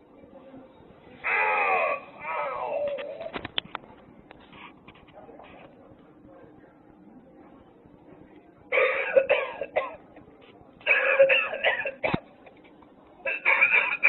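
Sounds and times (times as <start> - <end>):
recorded hacking coughs: 8.7 - 12.4, 13.3 - 14.0.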